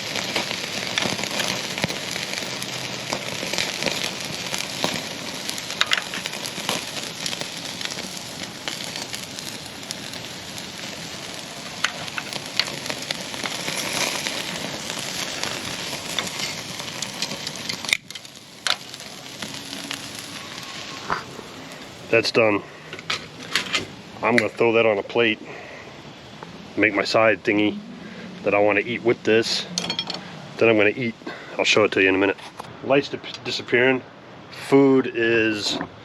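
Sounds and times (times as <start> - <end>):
small crackles: 0.0 - 22.2
steak sizzling on a grill: 0.0 - 22.6.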